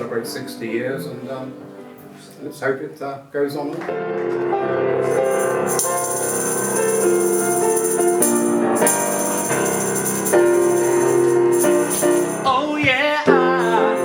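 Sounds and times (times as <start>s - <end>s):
piano: 0.0s - 14.0s
light jingling percussion: 5.0s - 12.6s, 13.4s - 14.0s.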